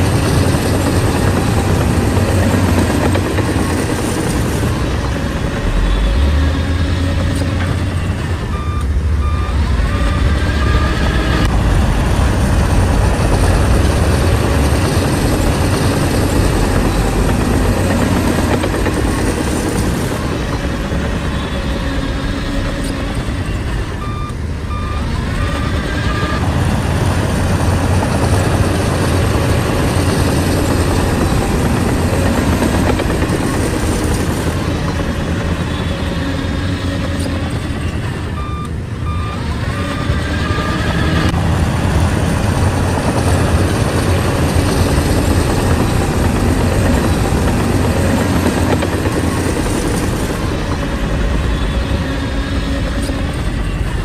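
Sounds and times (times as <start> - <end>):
bulldozer diesel engine running: 0.0 - 54.0
backup alarm beeping: 7.8 - 11.3, 23.2 - 26.4, 38.3 - 40.8.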